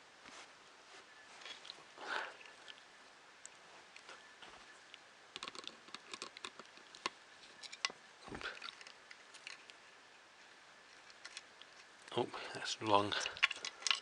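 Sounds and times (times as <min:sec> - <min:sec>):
light clicks and taps of plastic parts: 0:13.0 - 0:14.0.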